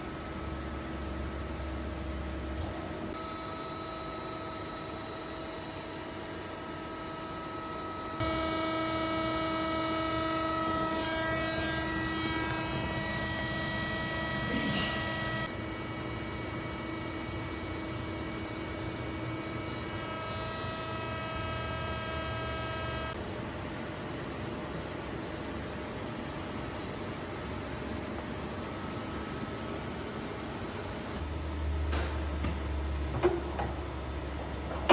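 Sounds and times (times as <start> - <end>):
machine whine: 0.0 - 23.2.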